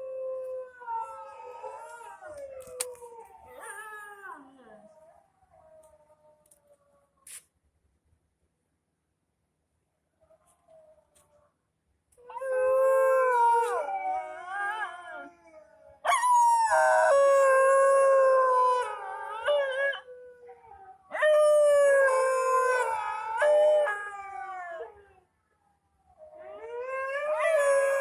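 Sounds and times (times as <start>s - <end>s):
dog howling: 0.0s - 4.8s, 12.3s - 25.1s, 26.2s - 28.0s.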